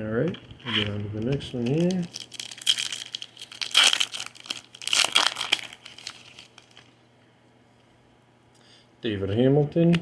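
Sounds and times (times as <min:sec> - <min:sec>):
foil wrapper crinkling: 0:00.6 - 0:06.9.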